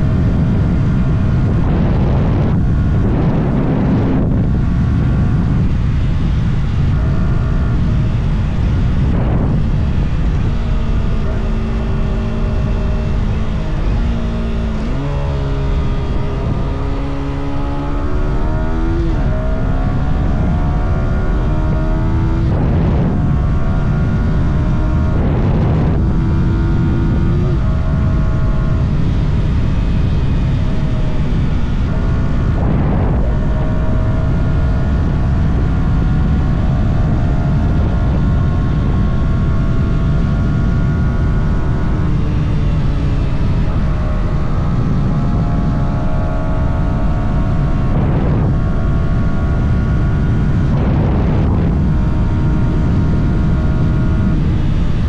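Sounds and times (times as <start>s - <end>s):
motorcycle engine running: 0.0s - 55.0s
loud rushing noise: 31.2s - 34.1s.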